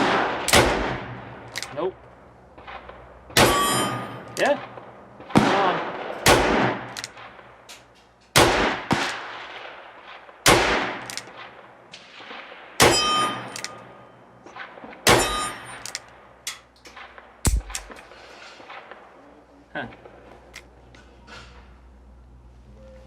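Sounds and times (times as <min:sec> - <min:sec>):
revolver gunshots with echo: 0:00.0 - 0:01.8, 0:02.6 - 0:07.7, 0:08.4 - 0:19.1
steel target clanging: 0:03.4 - 0:04.7, 0:12.8 - 0:14.2, 0:15.0 - 0:16.7.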